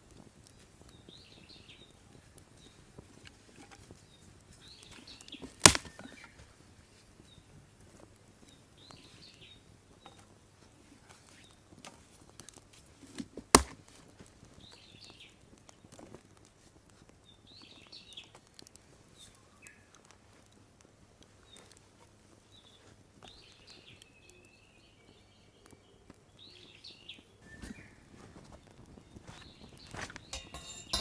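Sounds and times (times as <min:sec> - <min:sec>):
faint crackles and clicks: 0:00.0 - 0:30.4
dry wood cracking: 0:04.8 - 0:06.4, 0:11.1 - 0:22.3.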